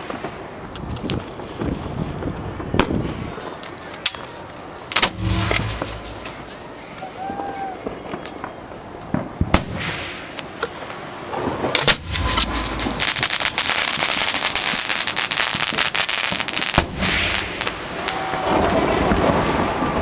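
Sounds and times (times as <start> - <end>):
fireworks crackling: 0.0 - 20.0
fireworks bangs: 4.9 - 8.2, 11.3 - 20.0.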